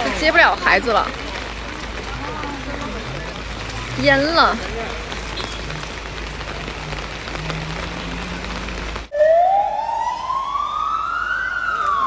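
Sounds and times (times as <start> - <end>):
heavy rain hissing: 0.0 - 9.1
emergency vehicle siren wailing: 3.1 - 12.0.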